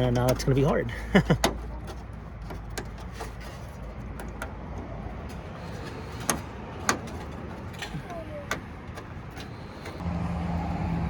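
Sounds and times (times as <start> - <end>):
light clicks of latch parts: 0.0 - 3.4, 4.0 - 10.0.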